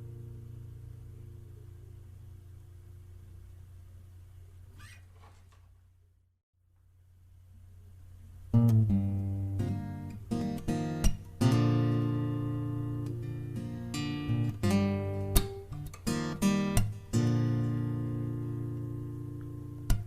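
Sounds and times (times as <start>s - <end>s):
acoustic guitar strumming chords: 8.5s - 20.0s.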